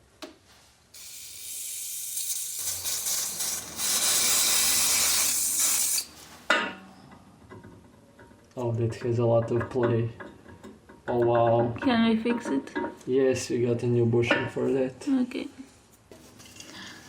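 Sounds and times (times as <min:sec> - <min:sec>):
pressurised spray hissing: 0:01.0 - 0:06.1.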